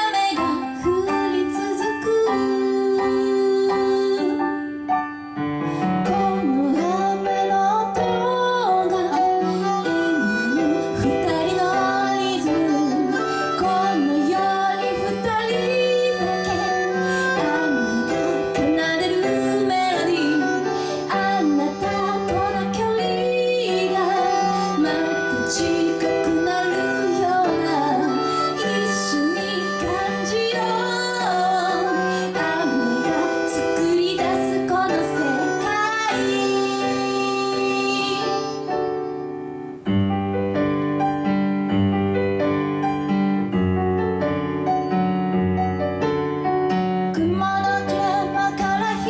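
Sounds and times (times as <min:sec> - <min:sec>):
woman singing: 0:00.0 - 0:05.1, 0:05.8 - 0:39.2, 0:47.1 - 0:49.0
keyboard chords: 0:00.0 - 0:49.0.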